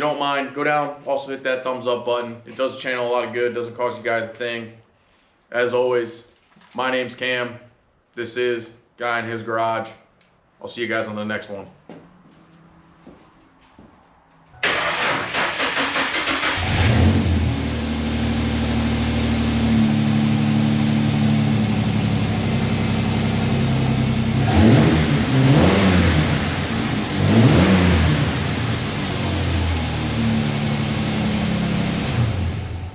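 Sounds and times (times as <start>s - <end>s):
car engine idling and revving: 14.4s - 32.9s.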